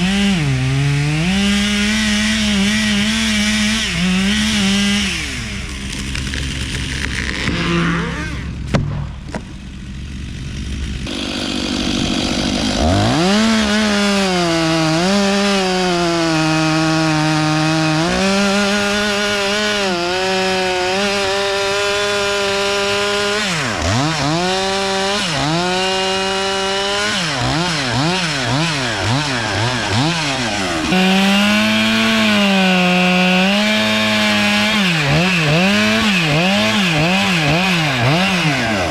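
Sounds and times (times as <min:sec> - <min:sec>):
chainsaw revving: 0:00.0 - 0:38.9
sharp knock: 0:08.7 - 0:09.5.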